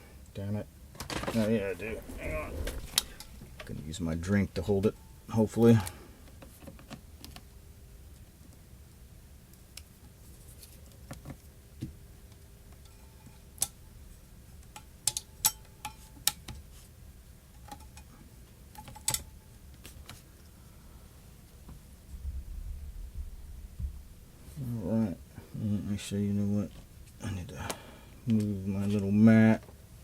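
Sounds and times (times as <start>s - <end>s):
faint steady hum: 0.0s - 30.0s
small tools clicking and tapping: 14.6s - 16.7s, 17.6s - 18.1s, 18.7s - 20.2s.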